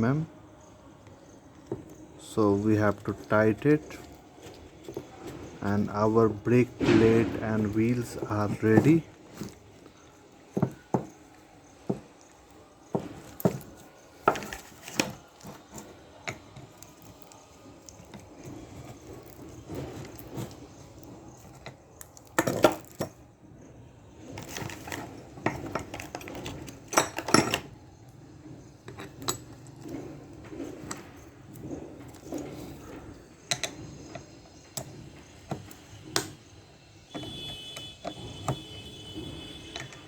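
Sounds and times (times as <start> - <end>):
metal tools clinking and knocking: 1.0 - 23.3, 24.2 - 40.0.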